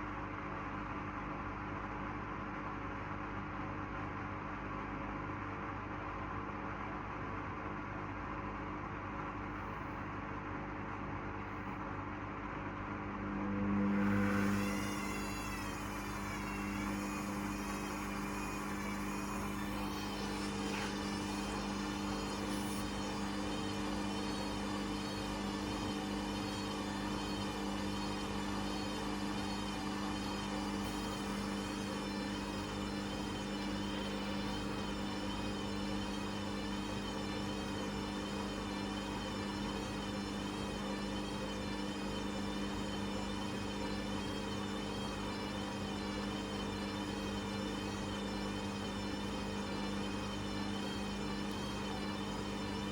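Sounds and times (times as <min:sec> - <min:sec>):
wavering high whine: 0:12.6 - 0:52.9
washing machine motor hum: 0:12.7 - 0:52.9.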